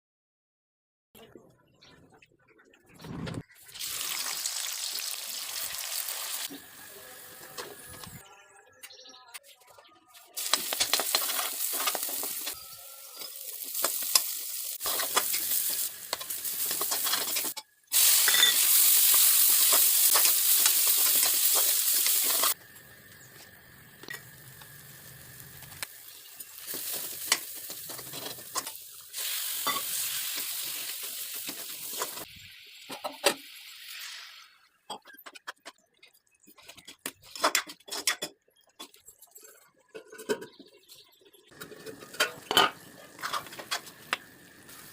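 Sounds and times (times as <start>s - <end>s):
chicken sizzling in hot oil: 3.6s - 8.0s, 10.4s - 34.8s, 41.4s - 44.9s.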